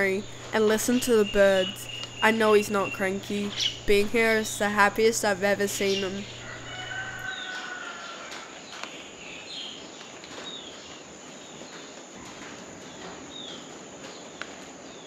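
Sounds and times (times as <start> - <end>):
high-pitched background hiss: 0.0 - 7.7
birds chirping: 0.0 - 15.0.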